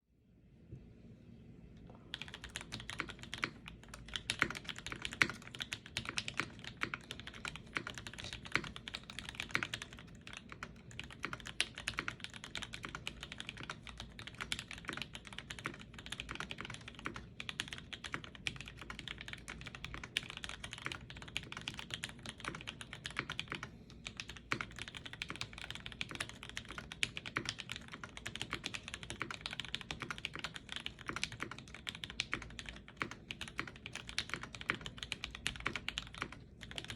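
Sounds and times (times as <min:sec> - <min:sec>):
mechanical keyboard typing: 0:02.1 - 0:36.9.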